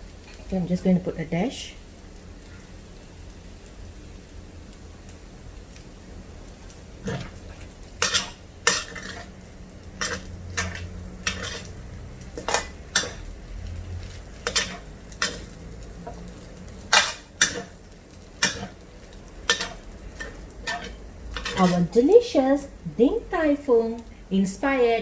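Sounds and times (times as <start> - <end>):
light sizzling: 0.0 - 25.0
metal utensil scraping a pan: 7.0 - 22.0.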